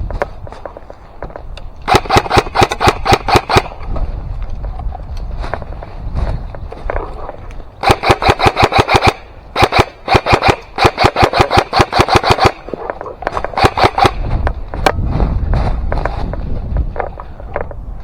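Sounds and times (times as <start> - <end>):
airsoft gun firing bursts: 1.8 - 3.9, 7.8 - 14.6.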